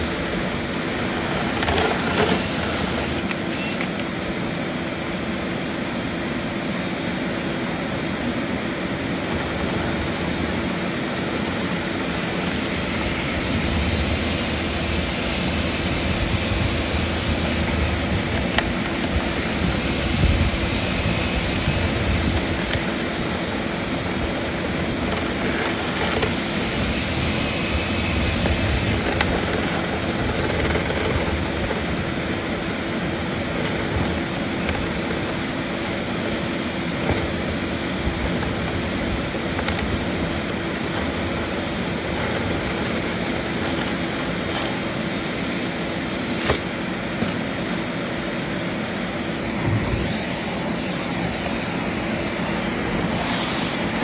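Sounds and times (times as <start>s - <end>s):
faint high whine: 0.0s - 54.0s.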